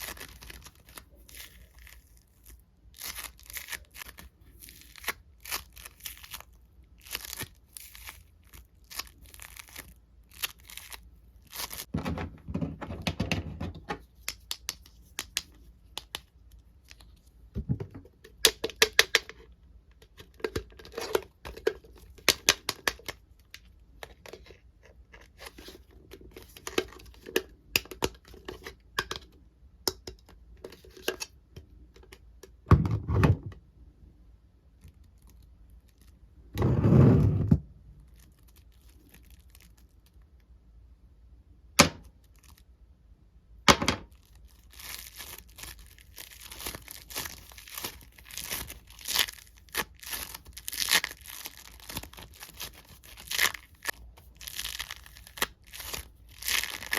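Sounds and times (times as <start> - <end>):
toy crackling and tearing: 0.0 - 11.9, 44.1 - 56.9.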